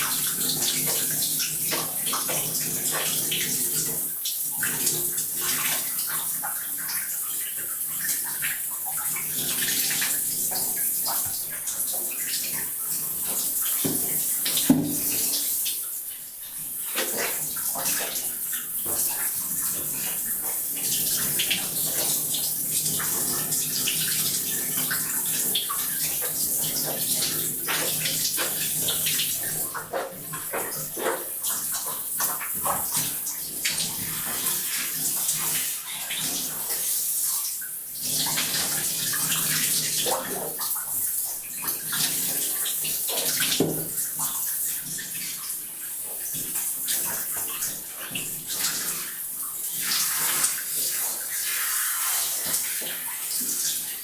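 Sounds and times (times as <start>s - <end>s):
water running into a bathtub: 0.0s - 54.0s
water splashes and drips: 0.0s - 54.0s.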